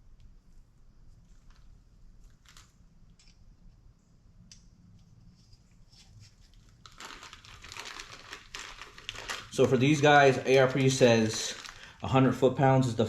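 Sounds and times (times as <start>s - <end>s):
plastic wrapping crinkling: 1.2s - 2.8s, 6.0s - 12.5s.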